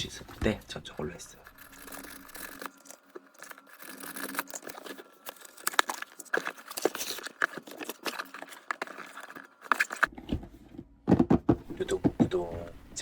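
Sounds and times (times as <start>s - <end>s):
packaging crinkling: 1.0s - 10.1s.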